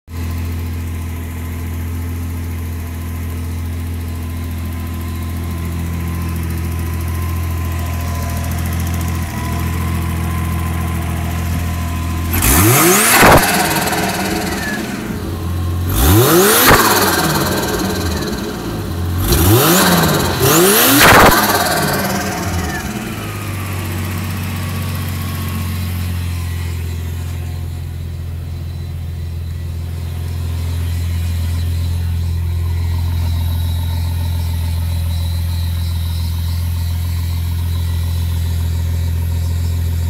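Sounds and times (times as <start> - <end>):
car engine idling and revving: 0.1 - 40.0
hissing turbo flutter: 8.1 - 40.0.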